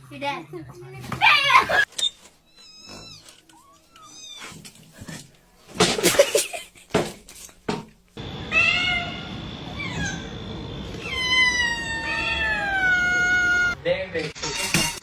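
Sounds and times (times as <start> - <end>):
cats meowing: 1.2 - 5.2, 8.4 - 13.8.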